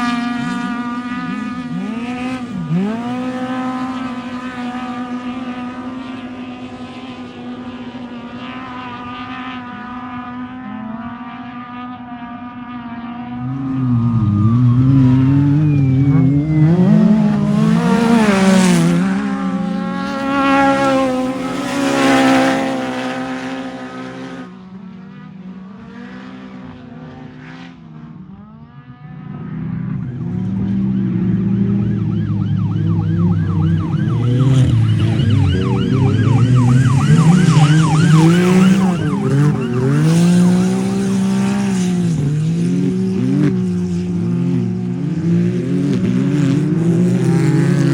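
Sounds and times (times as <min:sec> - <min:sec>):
race car engine revving: 0:00.0 - 0:28.2, 0:29.0 - 0:47.9.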